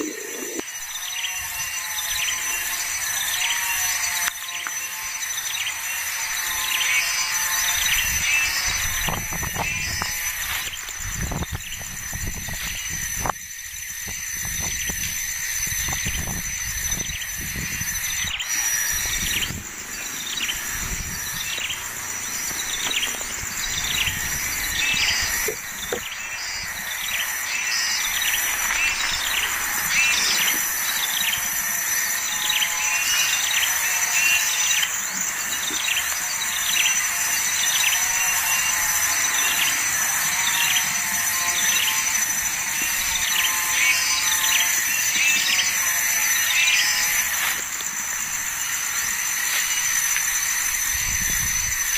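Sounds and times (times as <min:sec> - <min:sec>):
steady high-pitched hum: 0:00.0 - 0:51.9
baby birds chirping: 0:15.8 - 0:47.4.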